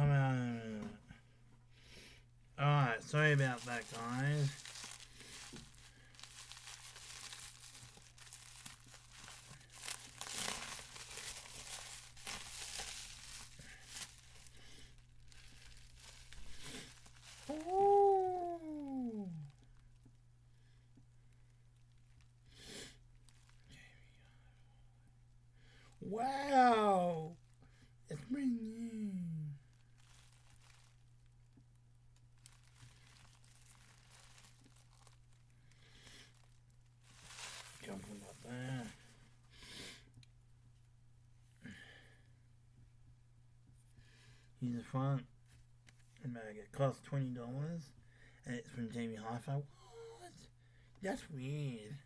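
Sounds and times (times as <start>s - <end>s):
low electrical hum: 0.0s - 52.0s
packaging crinkling and tearing: 3.1s - 20.1s, 23.1s - 23.7s, 29.6s - 39.4s
cd case clicking and crinkling: 3.2s - 14.5s.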